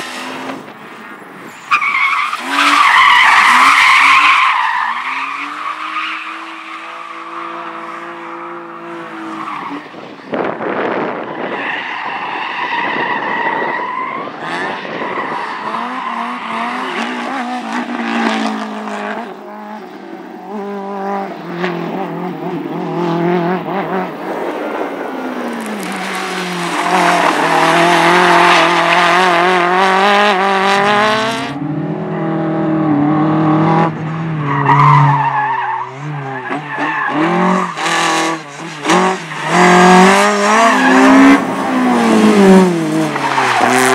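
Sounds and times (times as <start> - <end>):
car engine revving: 15.6 - 43.9.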